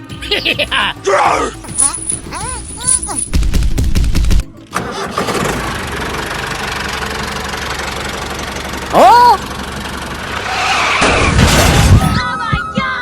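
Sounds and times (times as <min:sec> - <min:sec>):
engine running: 0:04.3 - 0:12.2.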